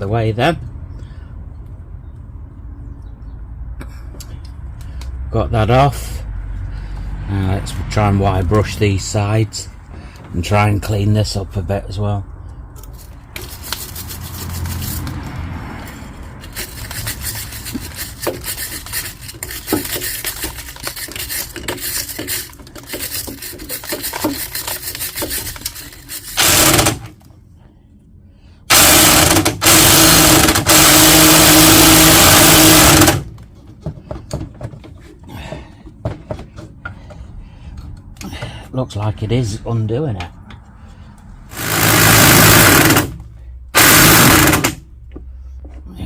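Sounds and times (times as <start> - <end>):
wire brush scrubbing metal: 13.4 - 15.2, 16.0 - 27.0
power tool running: 16.5 - 27.1, 28.7 - 33.3, 41.5 - 43.2, 43.8 - 44.8.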